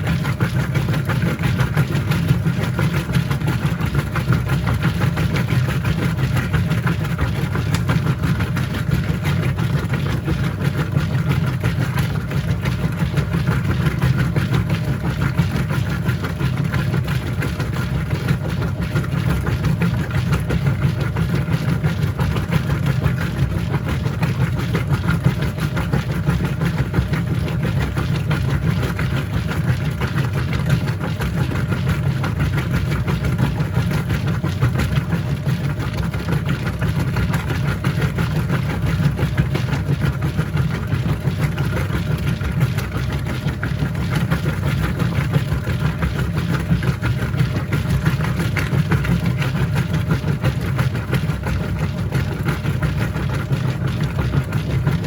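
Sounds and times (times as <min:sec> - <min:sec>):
washing machine motor hum: 0:00.0 - 0:55.0.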